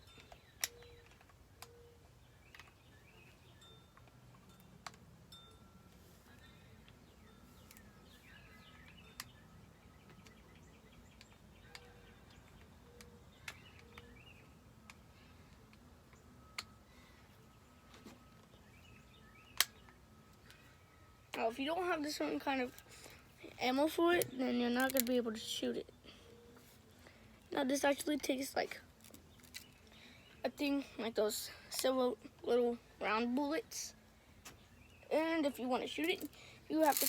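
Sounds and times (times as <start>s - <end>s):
faint bird chirps: 0.0s - 4.7s, 5.9s - 27.8s.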